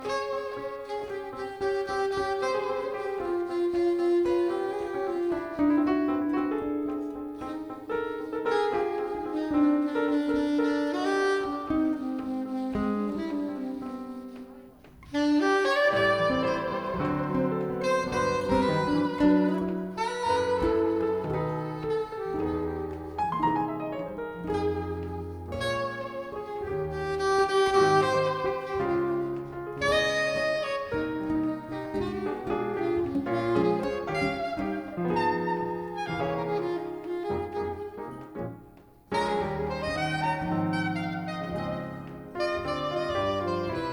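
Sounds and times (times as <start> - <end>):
piano accompaniment: 0.0 - 43.9
soprano saxophone melody: 0.0 - 43.9.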